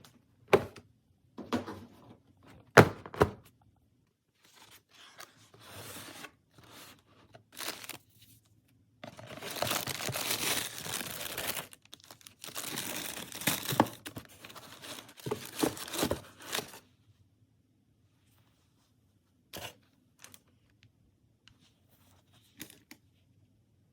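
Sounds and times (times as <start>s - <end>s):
packaging rustling and tearing: 5.6s - 8.1s, 9.0s - 16.8s.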